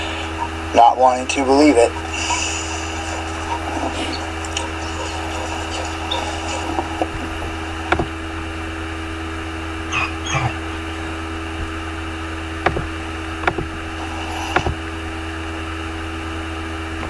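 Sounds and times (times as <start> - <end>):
steady hum and hiss: 0.0 - 17.0
sharp clicks: 3.3 - 8.5, 12.6 - 14.9
short high squeak: 9.9 - 10.6.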